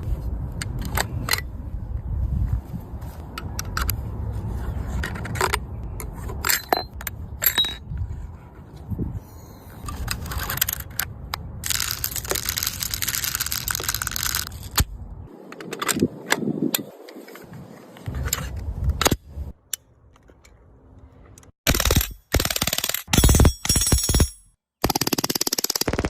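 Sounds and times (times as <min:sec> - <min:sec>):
toy gun clicks and rattles: 0:10.4 - 0:14.8, 0:21.7 - 0:23.1.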